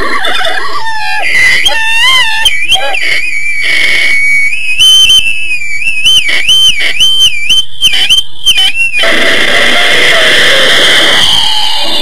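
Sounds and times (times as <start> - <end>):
guitar feedback squeal: 7.9 - 12.0
distorted noisy rush: 9.0 - 12.0.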